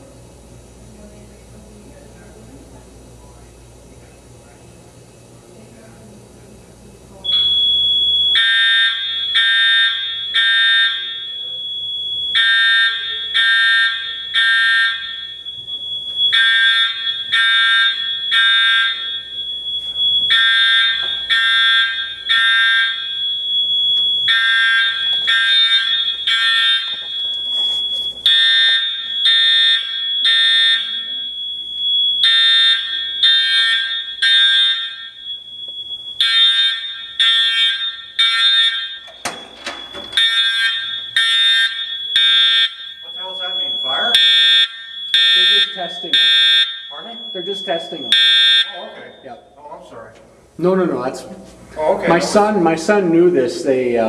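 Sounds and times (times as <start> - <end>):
fire alarm blasts: 7.2 - 49.7
steady high-pitched tone: 7.2 - 49.8.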